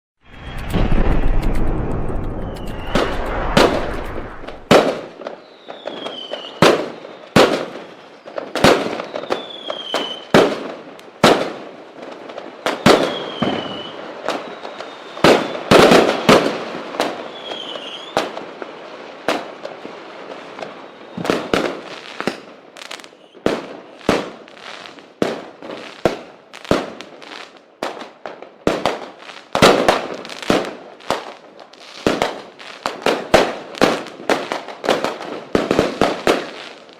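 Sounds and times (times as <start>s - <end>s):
firework rockets banging: 0.3s - 5.2s
falling firework whistle: 0.3s - 7.6s, 8.7s - 10.3s, 12.7s - 16.1s, 17.2s - 18.4s.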